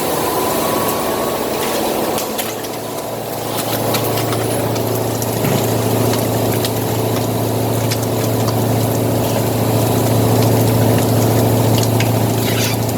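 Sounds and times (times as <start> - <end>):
machine hum with low drone: 0.0 - 12.9.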